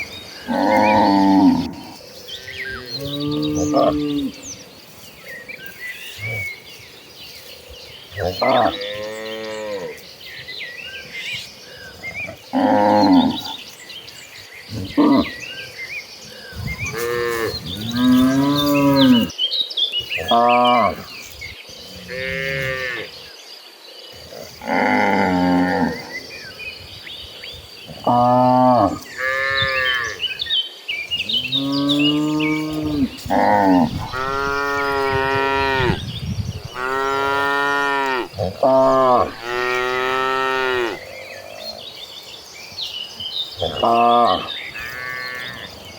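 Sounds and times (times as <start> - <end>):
cows mooing: 0.4 - 4.5, 8.2 - 10.0, 12.2 - 13.6, 16.4 - 19.3, 21.9 - 23.1, 24.4 - 26.1, 27.9 - 30.2, 31.3 - 41.7, 43.6 - 45.8
cattle mooing: 0.5 - 4.4, 31.5 - 36.0, 36.6 - 41.1.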